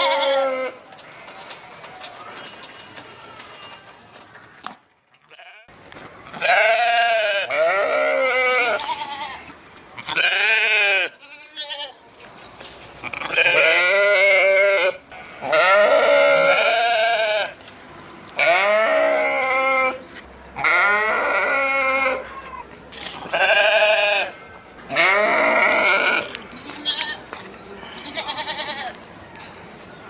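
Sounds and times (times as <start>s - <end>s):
sheep bleating: 0.0s - 1.4s, 6.4s - 12.0s, 13.0s - 17.6s, 18.4s - 20.0s, 20.6s - 22.6s, 23.2s - 27.2s, 28.0s - 29.0s.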